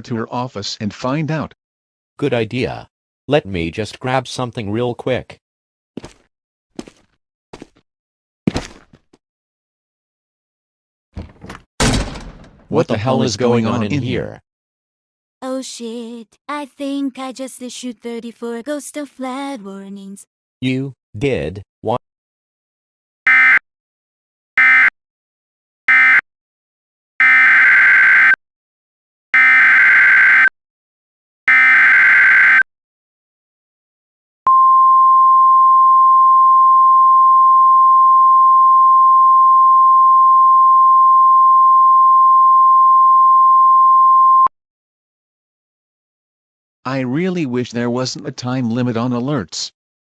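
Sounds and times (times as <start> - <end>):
steady warning alarm tone: 23.3 - 23.6, 24.6 - 24.9, 25.9 - 26.2, 27.2 - 28.4, 29.4 - 30.5, 31.5 - 32.6.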